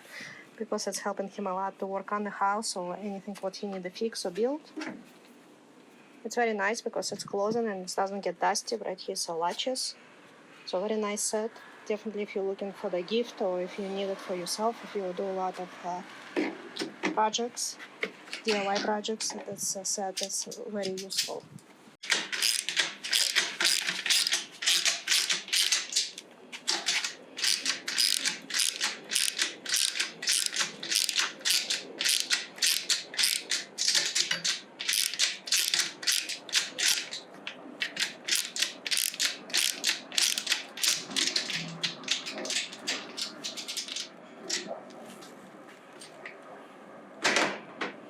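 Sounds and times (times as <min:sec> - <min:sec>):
ratchet handle clicking: 0:22.0 - 0:37.2, 0:37.8 - 0:44.7.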